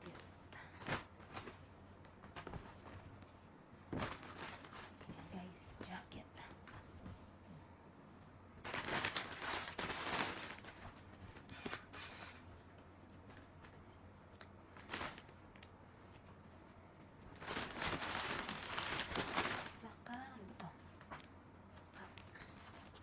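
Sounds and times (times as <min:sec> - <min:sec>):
packaging rustling and crinkling: 0:03.8 - 0:05.4, 0:08.6 - 0:12.5, 0:14.7 - 0:15.7, 0:17.2 - 0:20.0.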